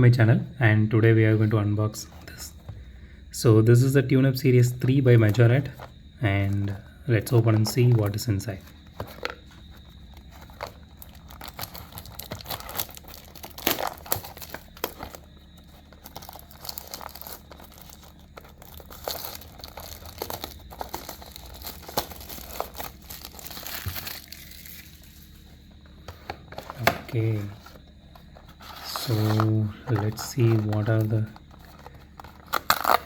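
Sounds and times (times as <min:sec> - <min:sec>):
packaging crinkling and rustling: 0:05.2 - 0:33.0
packaging tearing: 0:10.1 - 0:25.3, 0:28.5 - 0:33.0.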